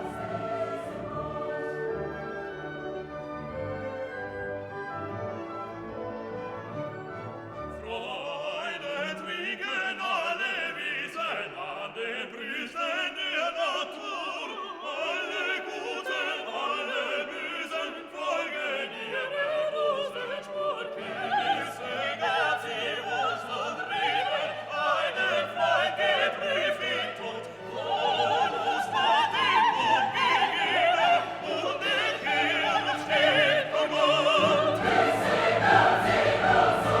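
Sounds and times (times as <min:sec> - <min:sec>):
orchestra playing: 0:00.0 - 0:08.1, 0:27.8 - 0:37.0
operatic voice singing: 0:07.8 - 0:37.0.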